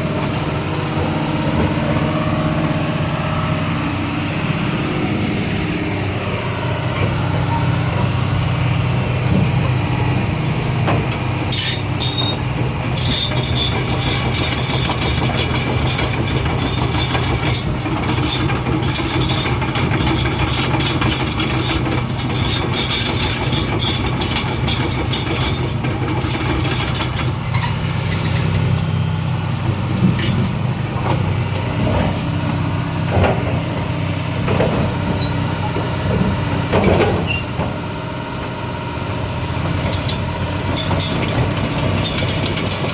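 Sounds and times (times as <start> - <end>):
excavator diesel engine running: 0.0 - 42.9
machine knocks and clanks: 10.8 - 29.0, 33.1 - 33.8, 34.4 - 37.8, 39.7 - 42.9.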